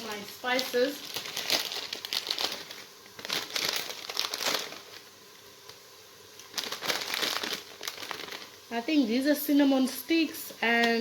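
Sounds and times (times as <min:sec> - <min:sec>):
plastic packet crinkling: 0:00.0 - 0:08.7.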